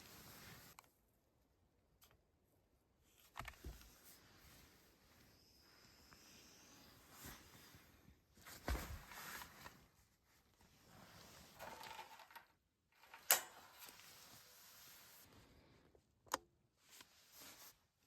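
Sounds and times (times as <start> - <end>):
rustling handling noise: 16.8 - 18.0.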